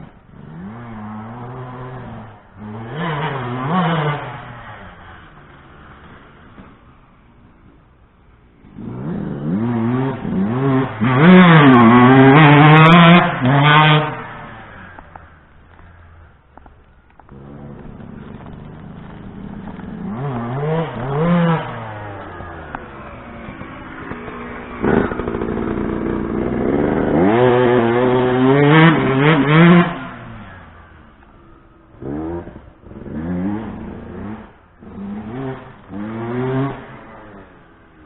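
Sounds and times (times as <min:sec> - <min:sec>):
dirt bike engine revving: 0:00.0 - 0:07.8, 0:08.6 - 0:16.4, 0:17.2 - 0:38.0.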